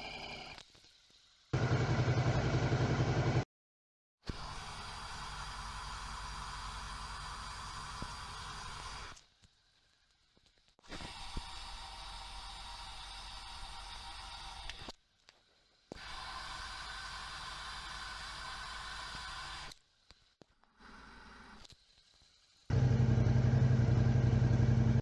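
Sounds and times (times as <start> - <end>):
low pulsing engine: 22.7 - 25.0.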